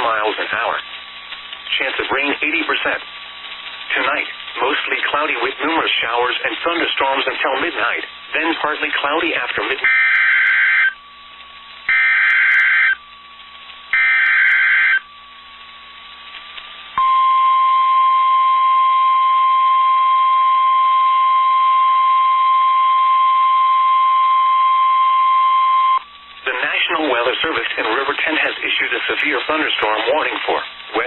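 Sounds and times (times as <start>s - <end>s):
screeching data bursts: 3.8s - 11.0s, 11.8s - 13.2s, 13.9s - 15.7s
steady single-tone alert signal: 9.8s - 11.0s, 11.9s - 13.0s, 14.0s - 15.0s.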